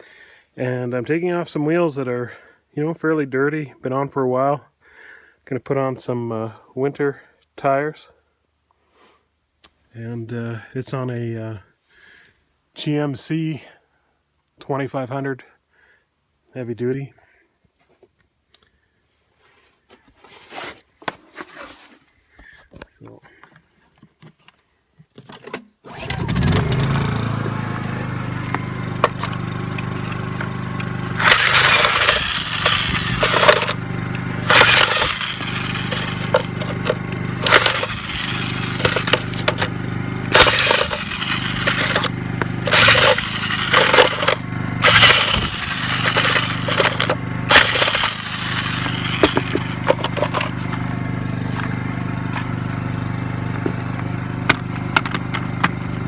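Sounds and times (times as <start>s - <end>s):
generator humming: 25.9s - 56.0s
impact wrench hammering: 31.2s - 33.8s, 34.4s - 39.7s, 40.3s - 50.5s.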